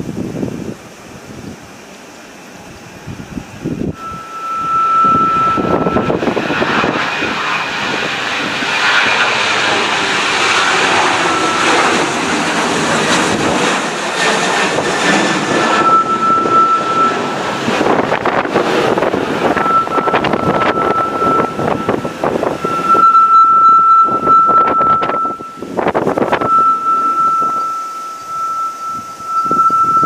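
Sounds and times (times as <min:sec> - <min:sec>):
jet engines roaring: 0:00.0 - 0:30.0.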